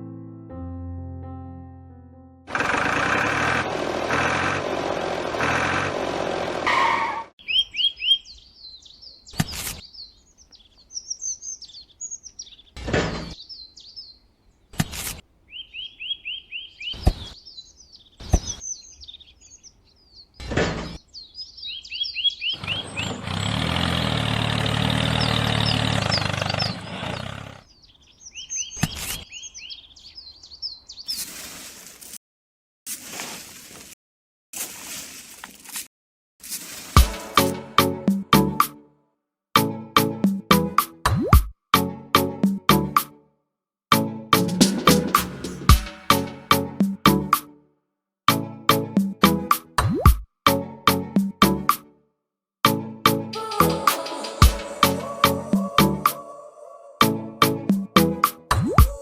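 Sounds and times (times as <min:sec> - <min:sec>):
small birds chirping: 0:07.4 - 0:23.7, 0:25.0 - 0:31.6.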